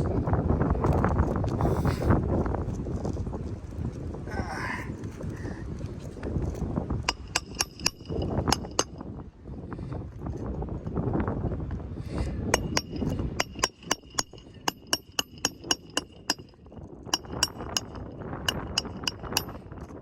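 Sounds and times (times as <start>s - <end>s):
hammer striking nails: 7.1s - 8.9s, 12.6s - 19.6s.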